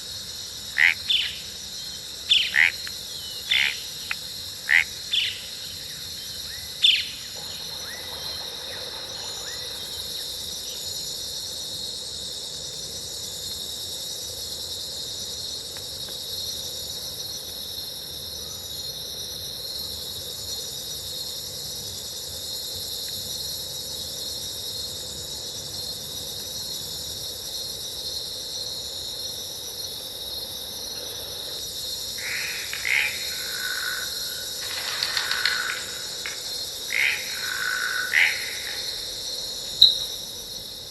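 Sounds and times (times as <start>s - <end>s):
insects chirring: 0.0s - 40.9s
sharp animal calls: 0.8s - 1.3s, 32.2s - 39.0s.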